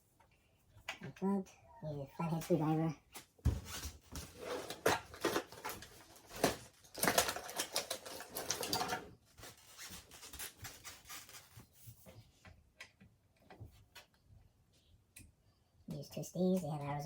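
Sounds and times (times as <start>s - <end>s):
computer parts clattering: 4.6s - 9.1s.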